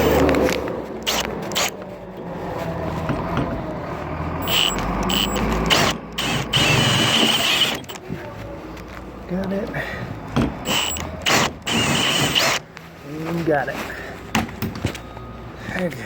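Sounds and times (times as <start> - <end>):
power drill boring into metal: 1.0 - 1.7, 4.4 - 8.0, 10.6 - 12.6.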